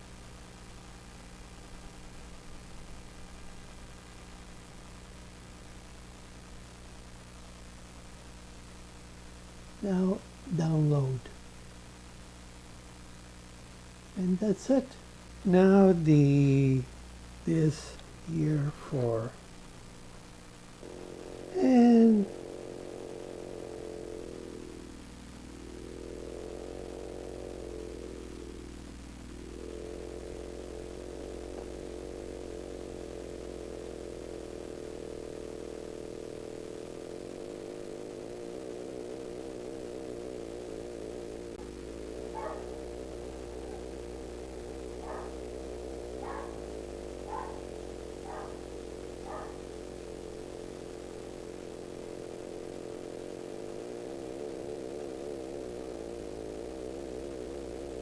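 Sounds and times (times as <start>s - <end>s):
buzzy synth drone: 20.8s - 58.0s.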